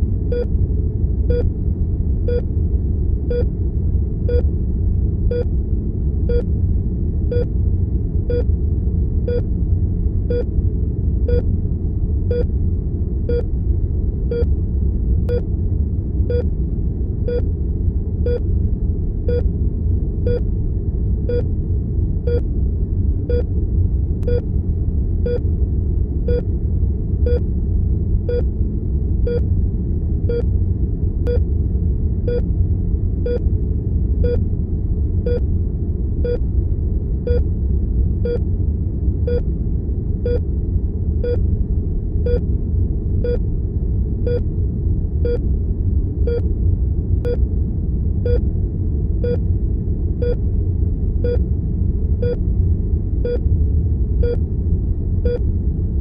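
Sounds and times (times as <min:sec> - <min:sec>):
low rumbling room tone: 0:00.0 - 0:56.0
heart monitor beeping: 0:04.3 - 0:04.5, 0:06.3 - 0:06.5, 0:19.3 - 0:19.5, 0:21.3 - 0:21.5, 0:26.3 - 0:26.5, 0:30.3 - 0:30.5, 0:40.2 - 0:40.4, 0:45.2 - 0:45.4, 0:48.2 - 0:48.4, 0:51.2 - 0:51.4, 0:53.2 - 0:53.4, 0:55.2 - 0:55.4.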